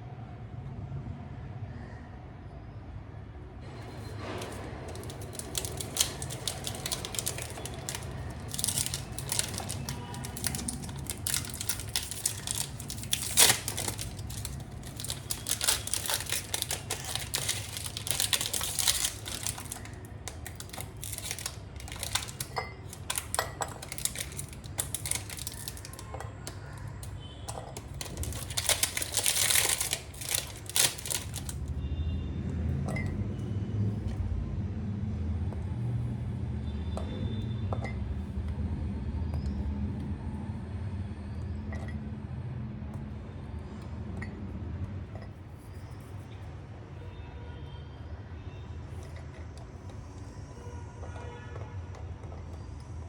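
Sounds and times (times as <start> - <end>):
crinkling and rustling: 3.8 - 31.8
objects clicking: 4.0 - 31.7.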